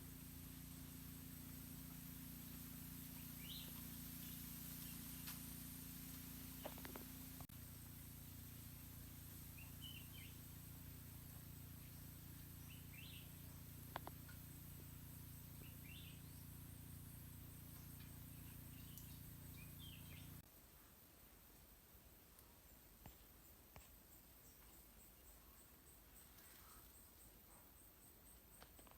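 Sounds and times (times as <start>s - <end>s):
low steady hum: 0.0s - 28.5s
bird chirping: 2.4s - 5.4s, 9.4s - 14.4s, 15.3s - 16.9s, 17.5s - 20.4s.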